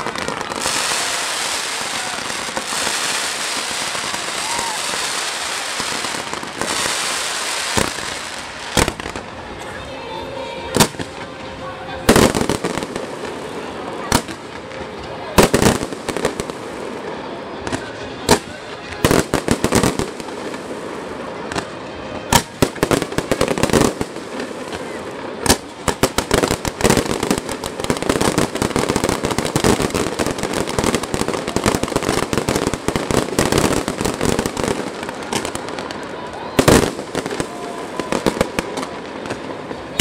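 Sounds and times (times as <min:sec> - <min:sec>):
rapid firework crackling: 0:00.0 - 0:09.5, 0:12.0 - 0:40.0.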